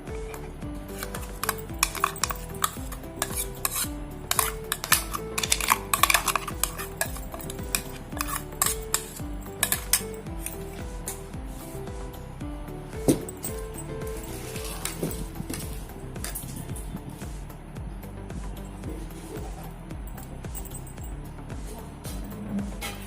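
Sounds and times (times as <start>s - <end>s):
background music with beat: 0.0s - 23.0s
metal utensil scraping a dish: 0.2s - 11.2s, 13.2s - 16.6s, 22.6s - 23.0s.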